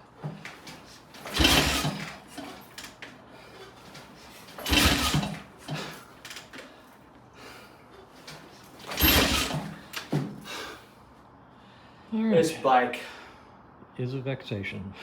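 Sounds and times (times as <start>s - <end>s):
motorcycle kick-start kicks: 0.2s - 3.2s, 3.9s - 6.8s, 8.3s - 10.4s.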